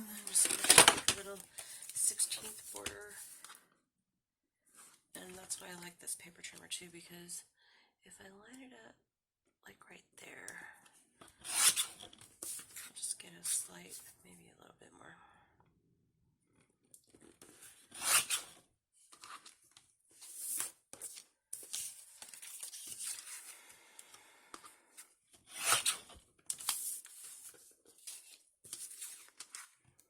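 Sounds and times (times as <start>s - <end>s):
paper rustling: 0.1s - 3.6s, 19.1s - 23.6s.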